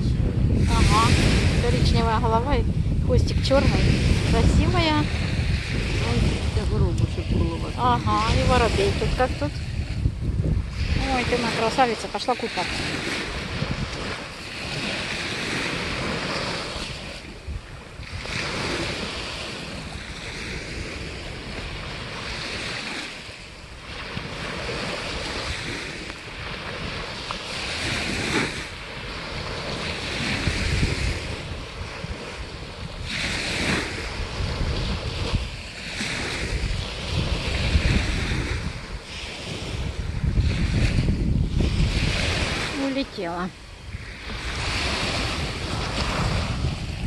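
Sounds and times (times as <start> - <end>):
sea waves washing onto shore: 0.0 - 47.0
wind buffeting microphone: 0.0 - 47.0.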